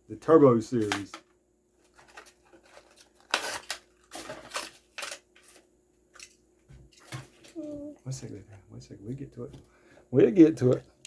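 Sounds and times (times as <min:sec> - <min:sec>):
plastic packaging crackling and tearing: 0:01.8 - 0:06.4.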